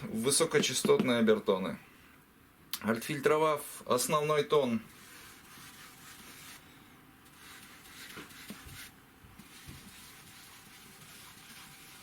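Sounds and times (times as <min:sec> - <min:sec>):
faint scratching: 0:04.6 - 0:12.0.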